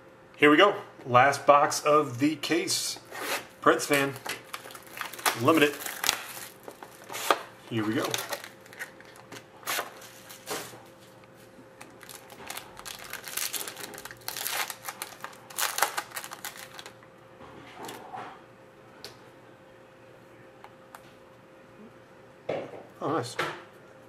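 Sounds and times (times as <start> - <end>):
trading cards rustling: 3.8 - 10.7, 11.8 - 16.9.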